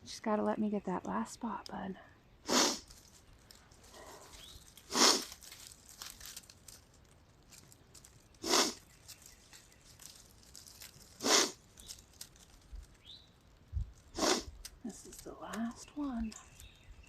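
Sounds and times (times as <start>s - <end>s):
person sniffling: 2.5s - 2.9s, 4.9s - 5.2s, 8.4s - 8.8s, 14.2s - 14.5s.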